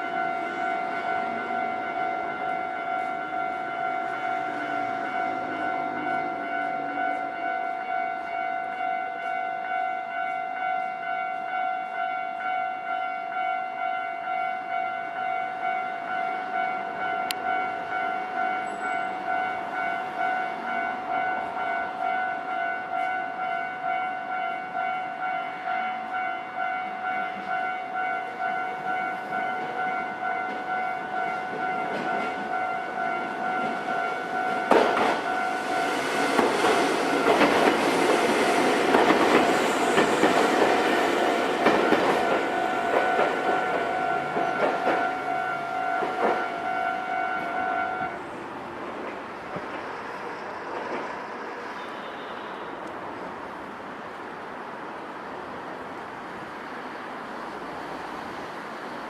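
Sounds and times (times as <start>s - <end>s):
level crossing warning bell: 0.0s - 48.3s
train wheels clattering: 30.4s - 46.7s.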